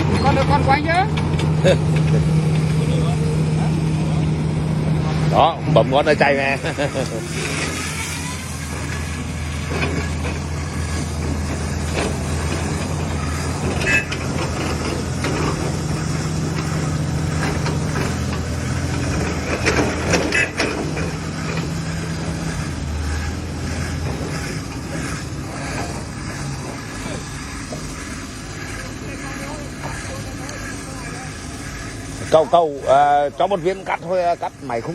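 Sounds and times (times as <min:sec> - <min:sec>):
knocks and clatter: 0:00.0 - 0:02.8, 0:08.6 - 0:28.9
stone-cutting saw humming: 0:00.0 - 0:34.9.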